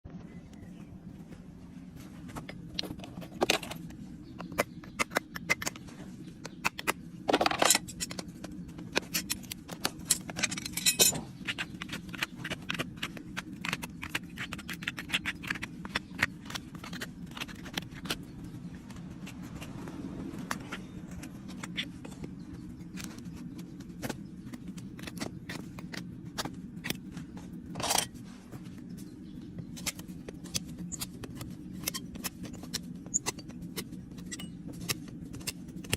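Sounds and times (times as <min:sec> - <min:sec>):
low hum: 0:00.1 - 0:35.9
hoof tools clicking and snipping: 0:02.5 - 0:19.8, 0:20.4 - 0:28.1, 0:29.7 - 0:35.9
scraping strokes on hoof: 0:29.9 - 0:35.9.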